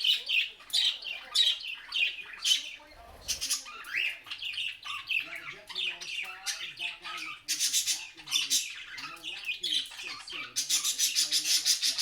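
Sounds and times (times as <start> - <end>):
birds squawking and chirping: 0.0 - 12.0
fast harsh bird calls: 0.8 - 5.4.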